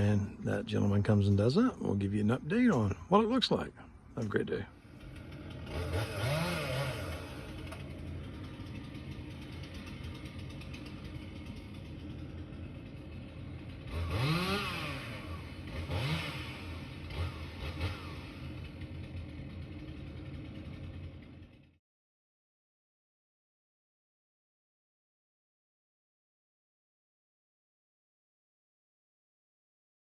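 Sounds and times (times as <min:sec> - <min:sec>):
vehicle engine revving: 0:04.2 - 0:21.6.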